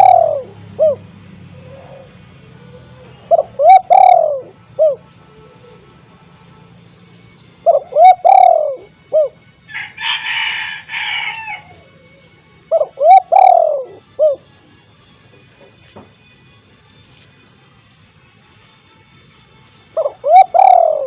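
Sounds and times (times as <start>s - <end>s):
dove cooing: 0.0s - 6.2s, 7.6s - 14.6s, 20.0s - 21.0s.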